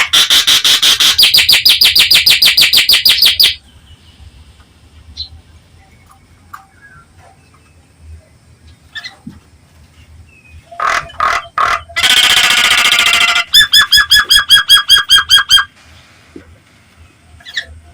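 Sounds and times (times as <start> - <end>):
myna bird calling: 0.0 - 7.8, 10.4 - 16.1.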